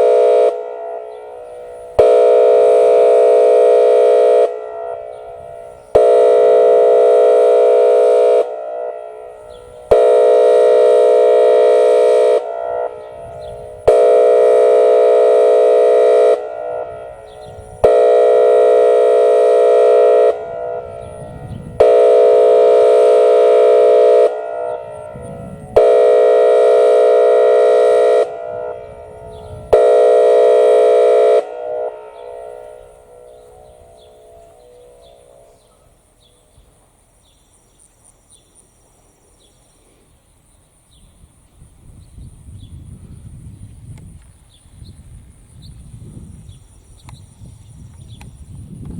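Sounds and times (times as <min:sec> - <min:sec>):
warning siren horn blasts: 0:00.0 - 0:36.2.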